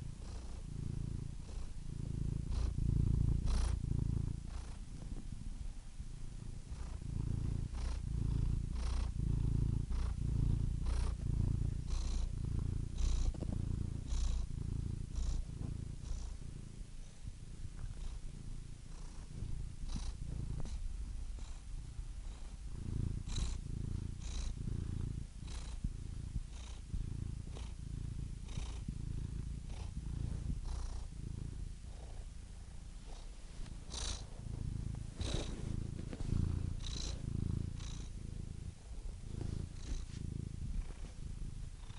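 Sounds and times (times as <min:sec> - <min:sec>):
cat purring: 0:00.0 - 0:41.9.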